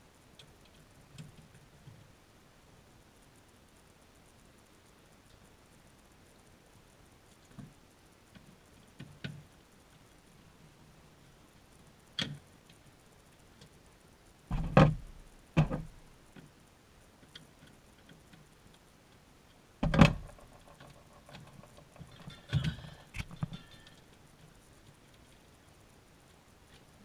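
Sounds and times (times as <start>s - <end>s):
knocks and clunks: 14.5s - 15.9s, 19.8s - 24.0s
light rattling knocks: 14.5s - 16.0s, 19.8s - 24.1s.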